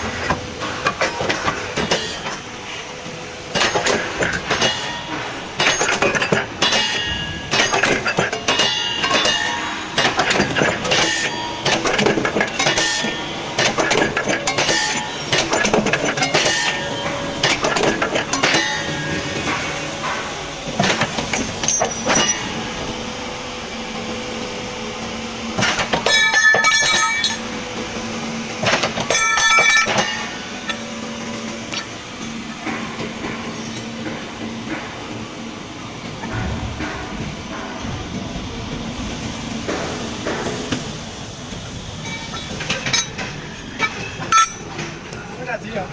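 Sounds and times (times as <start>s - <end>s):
machine hum: 6.4s - 45.9s
sharp metallic clanks: 25.6s - 27.5s, 28.6s - 30.8s, 42.0s - 45.1s
ringing metal clangs: 26.1s - 27.5s, 29.1s - 30.3s, 42.0s - 44.9s.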